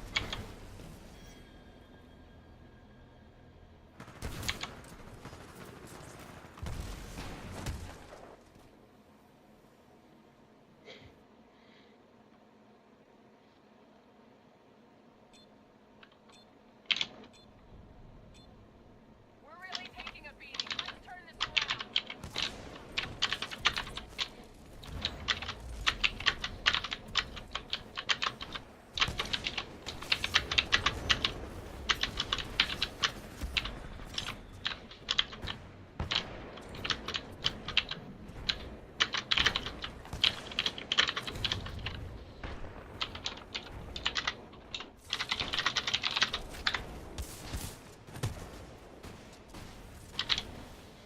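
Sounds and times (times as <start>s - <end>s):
fast typing on mechanical keyboard: 19.5s - 42.0s, 43.0s - 46.9s, 50.1s - 50.5s.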